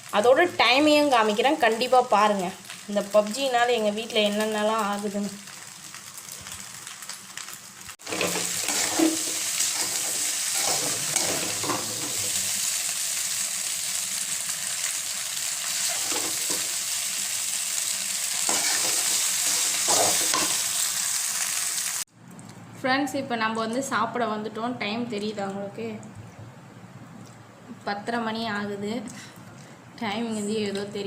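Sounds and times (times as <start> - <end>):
food sizzling in frying pan: 0.0 - 22.1
spoon scraping pan: 8.0 - 12.4, 18.5 - 20.6.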